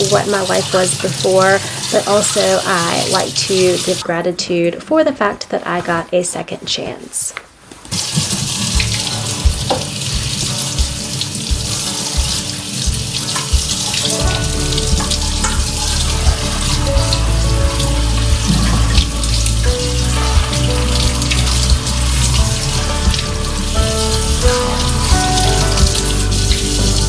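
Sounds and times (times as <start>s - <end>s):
tap running into sink: 8.0s - 27.0s.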